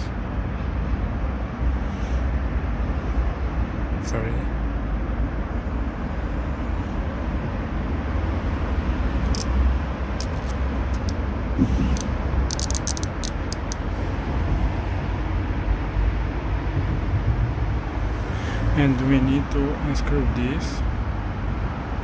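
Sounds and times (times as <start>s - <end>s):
small sharp clicks: 9.2s - 9.6s, 10.2s - 11.2s, 11.9s - 13.9s.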